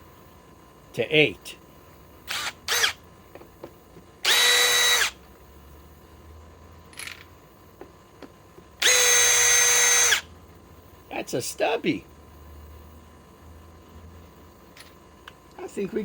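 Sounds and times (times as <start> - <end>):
cordless drill driver whirring: 2.3 - 3.0, 4.2 - 5.2, 8.8 - 10.3.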